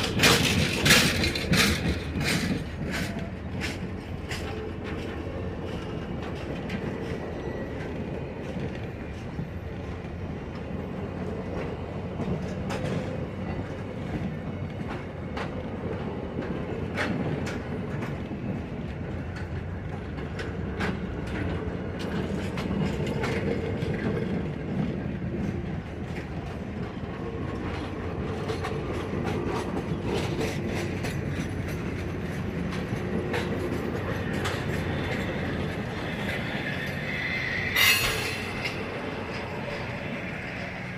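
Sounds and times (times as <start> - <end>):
wheel clicks over rail joints: 0.0 - 7.3, 16.4 - 37.0
train rumble: 0.0 - 40.9
high wheel squeal: 34.8 - 40.8.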